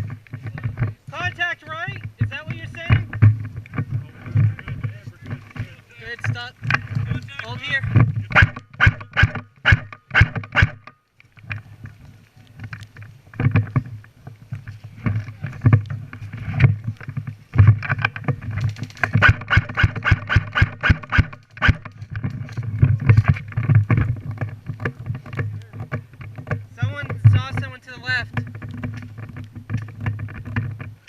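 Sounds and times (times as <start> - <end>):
soft thumps: 0.0 - 12.0
rustling: 0.0 - 31.0.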